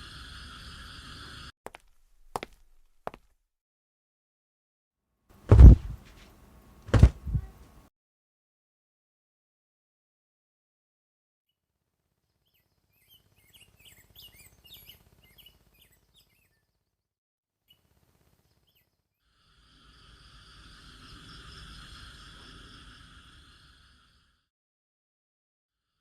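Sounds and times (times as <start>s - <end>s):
insect chorus buzzing drone: 0.0s - 1.5s, 19.3s - 24.5s
small birds chirping: 12.3s - 16.9s.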